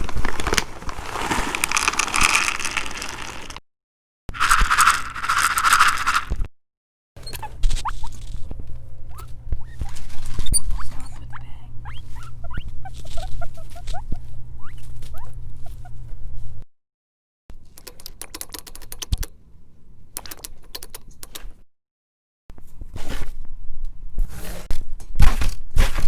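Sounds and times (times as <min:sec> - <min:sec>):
guinea pigs squeaking: 0:07.2 - 0:16.2
low background hum: 0:07.2 - 0:16.6.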